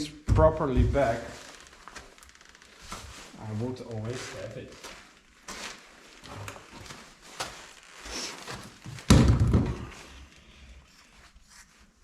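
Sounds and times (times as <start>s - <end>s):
heavy thunk: 9.1s - 10.0s.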